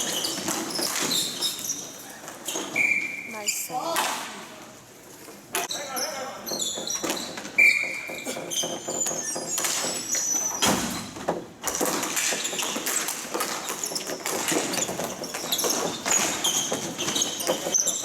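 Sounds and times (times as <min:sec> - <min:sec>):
shoes squeaking on court floor: 0:00.0 - 0:03.8, 0:05.6 - 0:11.1, 0:11.7 - 0:18.0.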